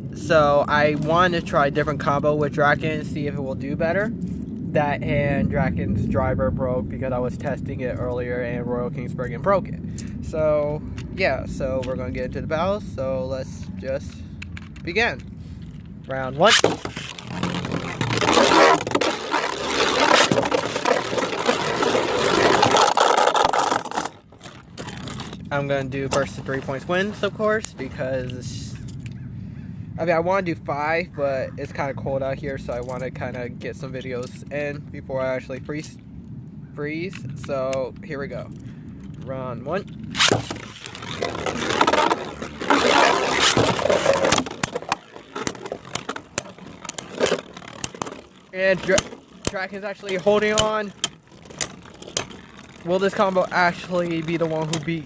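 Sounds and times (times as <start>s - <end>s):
spinning tops grinding: 16.5s - 25.4s, 40.1s - 55.0s.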